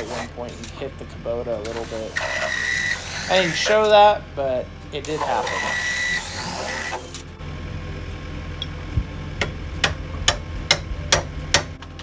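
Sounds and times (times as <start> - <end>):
low engine hum: 0.0 - 12.0
hammer striking: 8.6 - 12.0.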